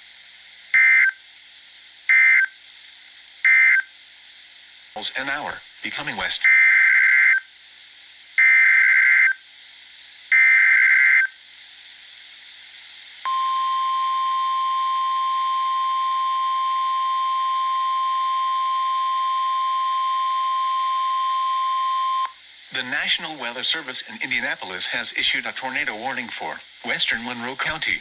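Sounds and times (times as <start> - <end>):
steady warning alarm tone: 13.3 - 22.4.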